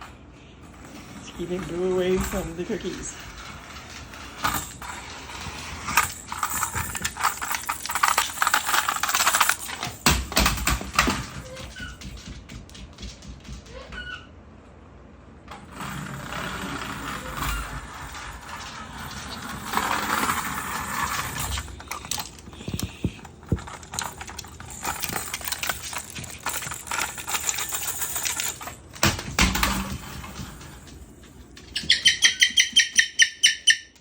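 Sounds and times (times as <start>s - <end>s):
small hard objects clattering: 1.2s - 12.1s, 16.7s - 32.0s.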